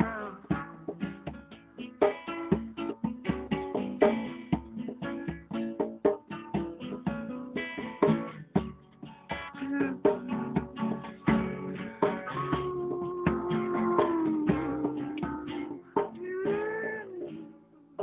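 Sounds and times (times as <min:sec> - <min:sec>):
guitar plucking quick melody: 0:09.5 - 0:17.7.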